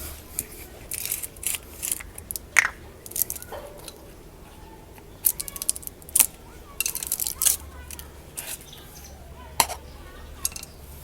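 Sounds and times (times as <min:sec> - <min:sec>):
plastic bottle crinkling: 0:00.0 - 0:04.0.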